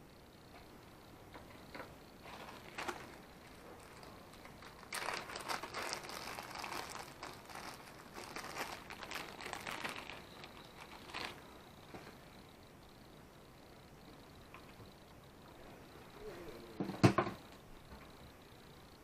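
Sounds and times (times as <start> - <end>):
crinkling and rustling handling: 1.3 - 12.4.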